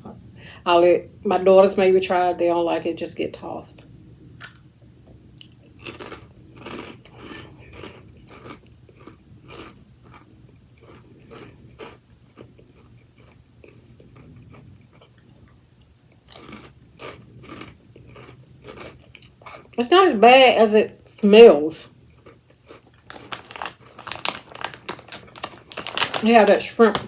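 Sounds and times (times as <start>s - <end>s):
chips being chewed: 5.4s - 19.7s, 22.1s - 27.0s.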